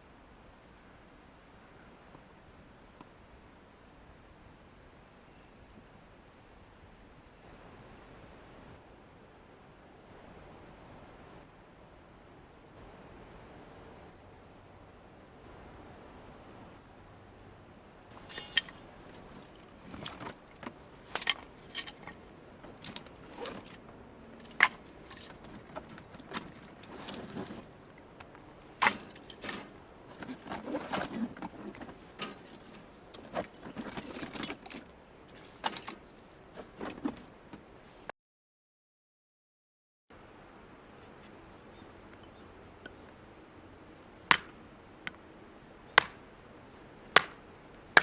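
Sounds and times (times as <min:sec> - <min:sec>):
metallic jangle: 0:18.1 - 0:18.9
objects clinking and clattering: 0:18.1 - 0:37.2.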